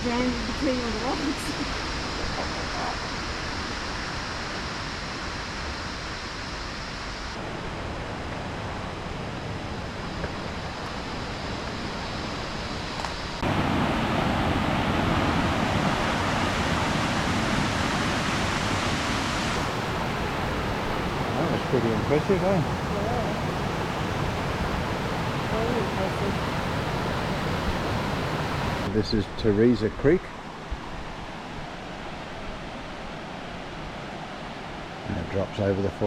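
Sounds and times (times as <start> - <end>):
waterfall roaring: 6.8 - 29.3.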